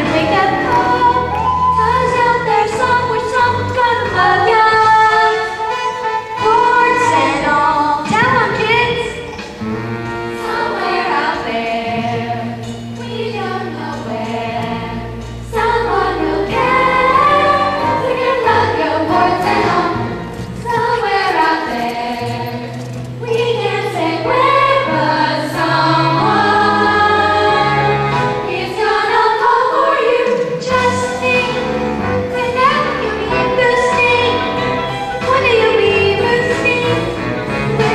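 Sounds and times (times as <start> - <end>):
group singing in harmony: 0.0 - 5.6, 10.3 - 37.9
musical accompaniment with bass: 0.0 - 37.9.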